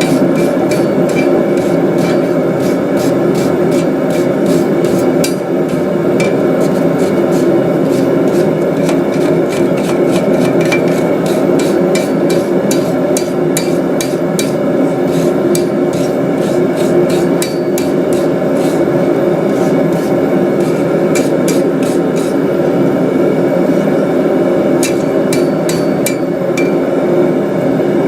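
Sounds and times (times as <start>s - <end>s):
hammer ringing on anvil: 0.0s - 2.4s, 5.2s - 6.5s, 10.5s - 18.4s, 24.8s - 27.0s.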